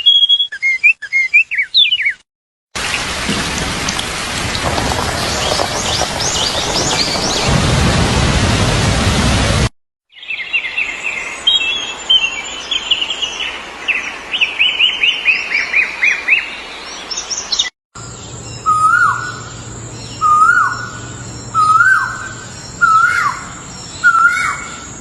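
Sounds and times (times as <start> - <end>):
small birds chirping: 0.0 - 2.2, 10.1 - 25.0
songbird singing: 0.0 - 2.2, 4.6 - 7.6, 10.1 - 25.0
steady rain: 2.8 - 9.7.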